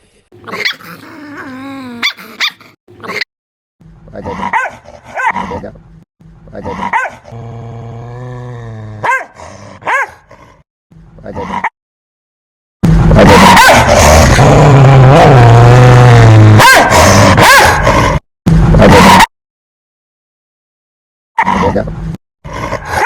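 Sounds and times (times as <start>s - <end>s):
dog growling low: 0.4s - 2.8s, 6.5s - 10.6s, 13.7s - 18.2s, 22.4s - 23.0s
dog barking: 4.4s - 5.5s, 6.7s - 7.3s, 9.0s - 10.3s, 13.3s - 14.0s, 16.6s - 18.0s.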